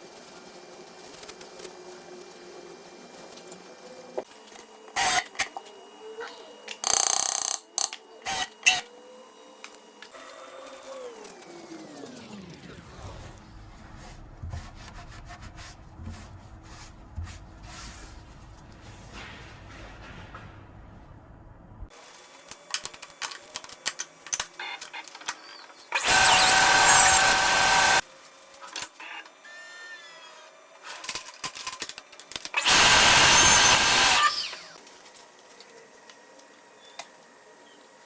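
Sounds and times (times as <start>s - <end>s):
handheld power tool running: 25.9s - 28.0s, 32.6s - 34.8s.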